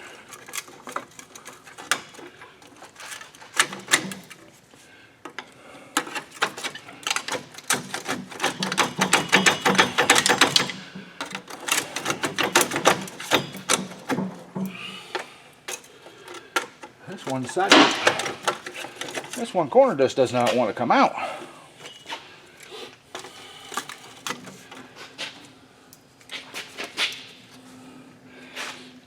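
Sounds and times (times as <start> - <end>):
pry bars clinking on metal: 0.2 - 4.4, 5.4 - 19.5.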